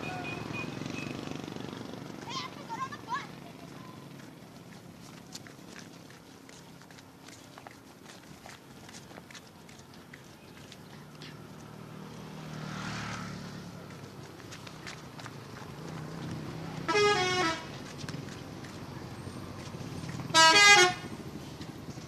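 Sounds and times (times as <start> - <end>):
low engine rumble of traffic: 0.0 - 22.0
multi-tone musical bus horn: 16.8 - 17.8, 20.3 - 21.2.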